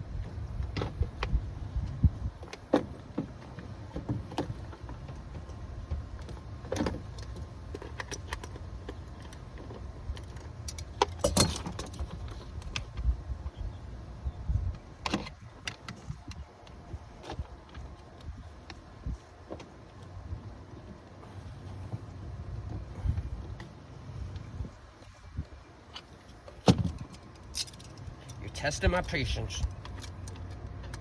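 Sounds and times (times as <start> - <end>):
metallic clicks and clinks of tools: 10.1 - 12.8, 26.9 - 31.0.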